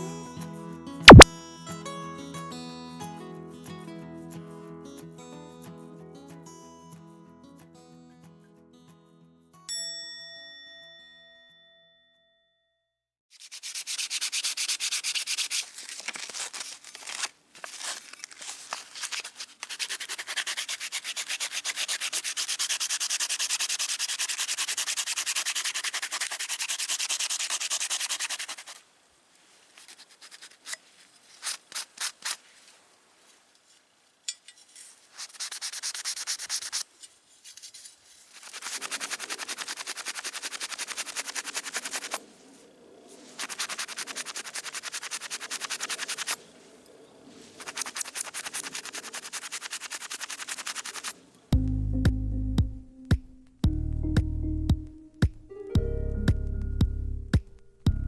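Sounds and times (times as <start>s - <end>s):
aerosol spray can hissing: 21.8s - 28.8s, 43.4s - 46.4s, 47.6s - 51.1s.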